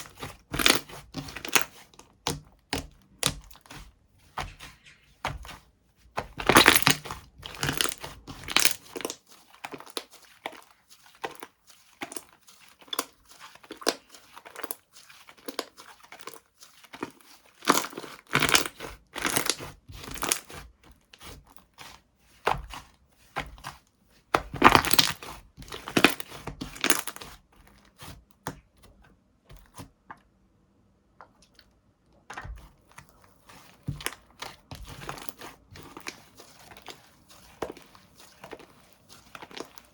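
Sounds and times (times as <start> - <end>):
slime crackling and popping: 0.0 - 3.8, 6.2 - 10.5, 17.0 - 20.6, 24.3 - 27.4, 33.9 - 39.9.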